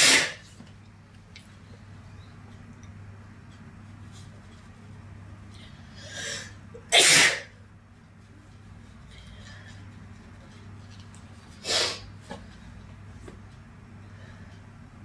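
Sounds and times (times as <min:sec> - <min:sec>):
woman sneezing: 0:06.9 - 0:07.5.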